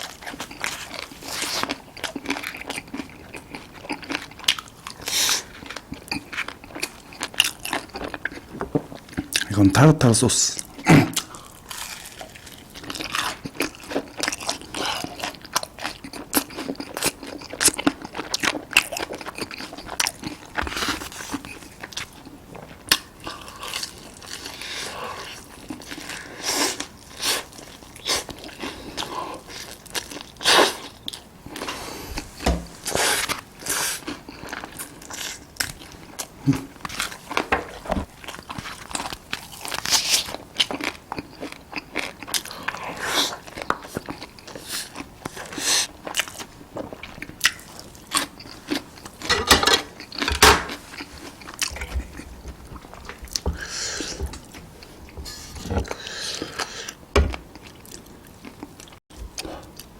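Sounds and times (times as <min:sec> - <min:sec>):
chewing: 0:00.0 - 0:09.5, 0:10.6 - 0:59.9
crunching fried chicken: 0:00.0 - 0:32.2, 0:32.8 - 0:51.8.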